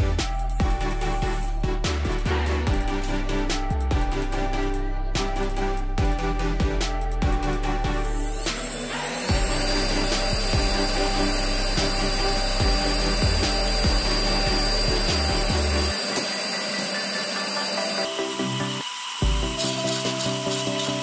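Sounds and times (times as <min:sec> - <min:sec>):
background music: 0:00.0 - 0:21.0
router spindle whine: 0:08.0 - 0:21.0
machine rushing noise: 0:08.3 - 0:20.2.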